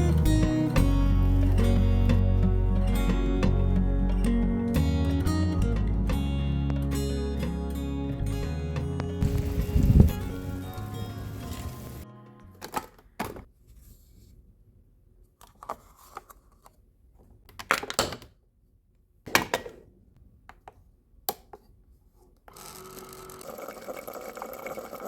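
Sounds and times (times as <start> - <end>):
objects knocking and clattering: 19.3 - 19.9.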